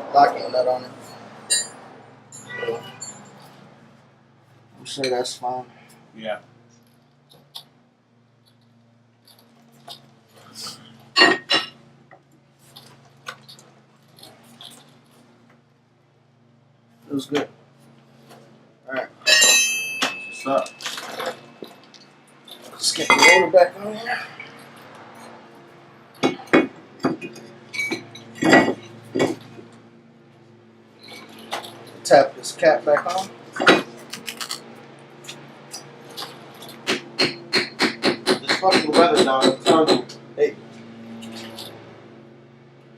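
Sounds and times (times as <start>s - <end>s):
metal tools clinking and knocking: 1.0s - 3.6s, 11.0s - 11.8s, 19.2s - 23.6s, 26.1s - 29.6s, 31.0s - 32.2s, 32.9s - 40.2s, 41.1s - 41.8s
sharp metallic strikes: 19.2s - 20.9s.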